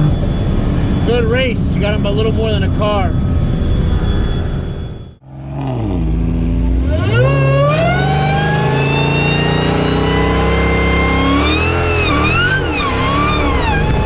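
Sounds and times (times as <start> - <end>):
car engine: 0.0 - 14.0
performance car accelerating hard: 5.3 - 14.0.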